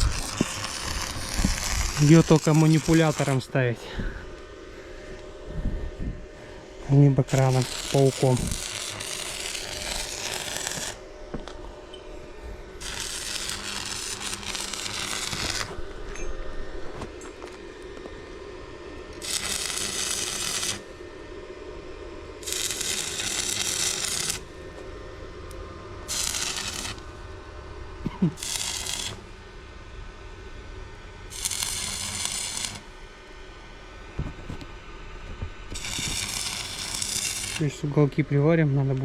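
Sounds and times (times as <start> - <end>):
arc welding crackling hiss: 0.0 - 4.6, 6.4 - 11.8, 12.7 - 16.1, 19.0 - 21.0, 22.4 - 24.8, 26.0 - 27.2, 28.0 - 29.6, 31.2 - 39.0
steady low hum: 0.0 - 39.0.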